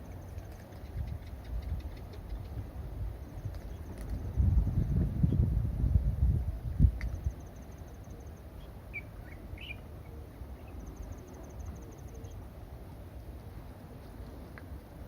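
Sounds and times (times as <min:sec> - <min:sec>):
bird chirps: 0:07.5 - 0:09.9.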